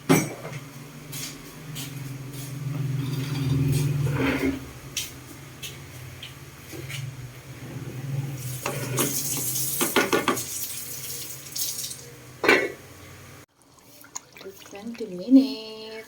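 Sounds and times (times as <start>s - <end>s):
metal utensil scraping a pan: 2.8s - 4.7s
hot oil sizzling: 8.2s - 12.3s.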